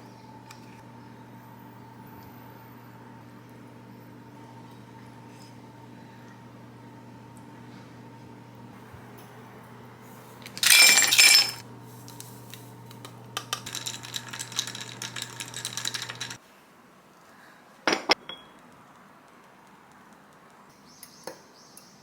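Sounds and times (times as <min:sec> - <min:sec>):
dishes and utensils clattering: 0:10.5 - 0:11.6, 0:17.9 - 0:18.5.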